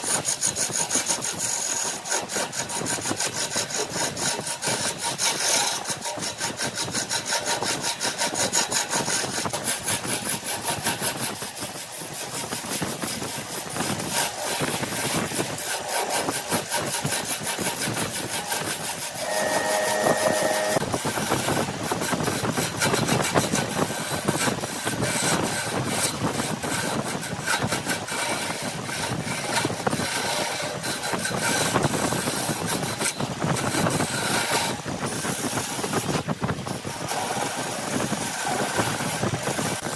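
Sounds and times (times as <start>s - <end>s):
wood lathe scraping chatter: 0.0s - 39.9s
high whine: 19.2s - 21.0s.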